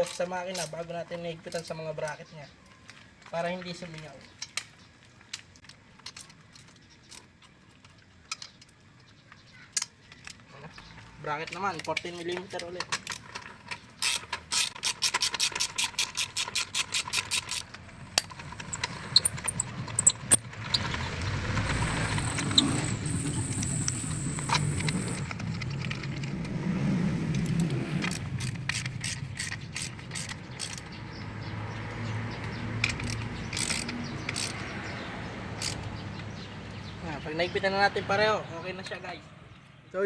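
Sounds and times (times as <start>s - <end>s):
ratchet wrench clicking: 13.1s - 20.4s, 27.4s - 31.0s, 32.4s - 34.8s, 35.6s - 36.0s
low rumble: 17.8s - 28.6s.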